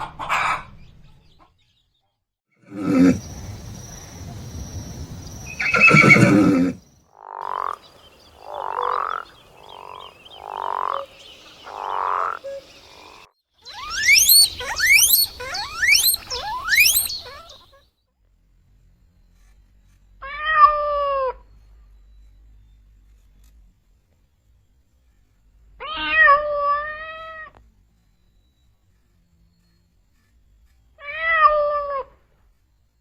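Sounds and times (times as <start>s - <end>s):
rising animal squeals: 2.7s - 3.2s, 5.5s - 6.8s, 13.7s - 17.7s
short falling animal call: 2.7s - 3.2s, 5.6s - 6.8s
croak-like animal calls: 2.7s - 3.4s, 5.5s - 17.6s.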